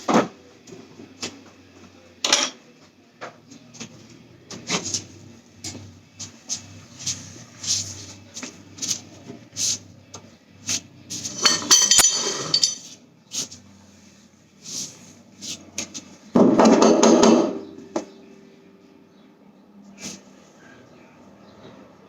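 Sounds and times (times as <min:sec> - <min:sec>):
tools clinking on metal: 0:11.3 - 0:12.9.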